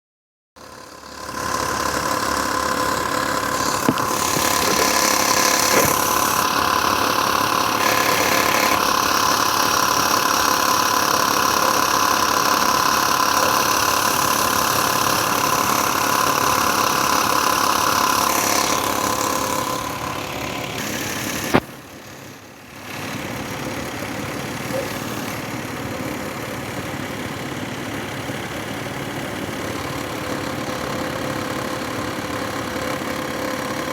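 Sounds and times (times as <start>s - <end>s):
car engine idling: 0.6s - 33.9s
engine ticking: 0.6s - 33.9s.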